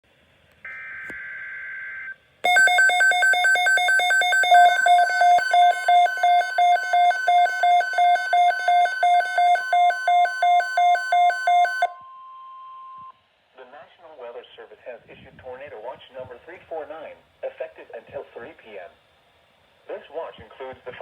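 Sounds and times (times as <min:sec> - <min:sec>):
two-pitch alert tone pulsing: 0:02.5 - 0:13.0.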